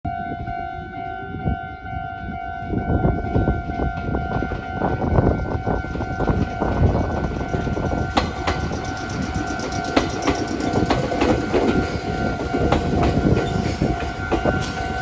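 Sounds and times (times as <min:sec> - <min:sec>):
train wheels clattering on rails: 0:03.2 - 0:15.0.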